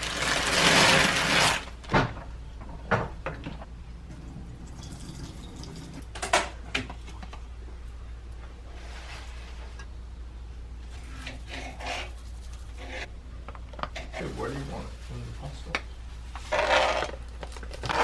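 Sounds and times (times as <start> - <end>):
water running from a tap: 4.6 - 6.0.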